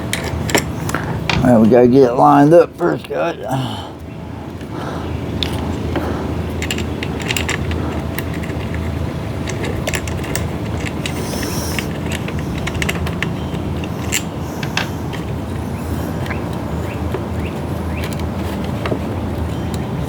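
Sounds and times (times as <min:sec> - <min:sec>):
steady low hum: 0:00.0 - 0:20.0
plastic parts clicking and knocking: 0:05.4 - 0:15.4.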